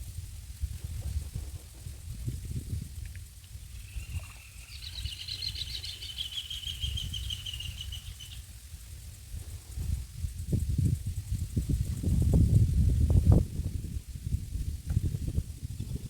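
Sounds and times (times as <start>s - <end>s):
bird singing fast trill: 3.6s - 8.5s.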